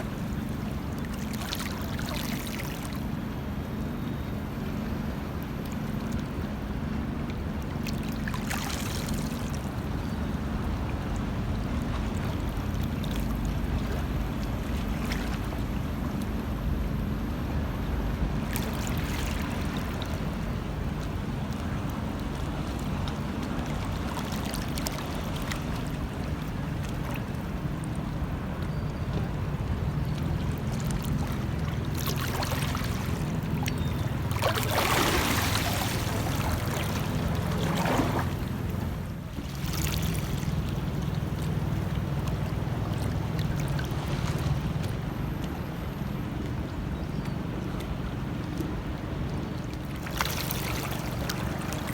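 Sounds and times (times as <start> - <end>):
sea water lapping: 0.0 - 51.9
steady low rumble: 0.0 - 51.9
splashing swells: 30.8 - 45.0.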